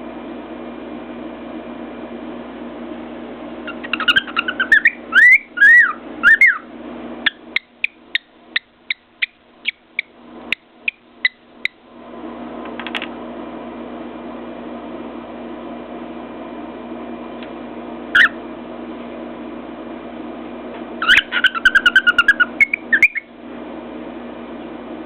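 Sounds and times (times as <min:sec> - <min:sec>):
cockatiel sharp chirps: 0:03.7 - 0:11.8, 0:18.2 - 0:18.4, 0:21.0 - 0:23.3
cockatiel whistling: 0:03.7 - 0:11.8, 0:18.2 - 0:18.4, 0:21.0 - 0:23.3.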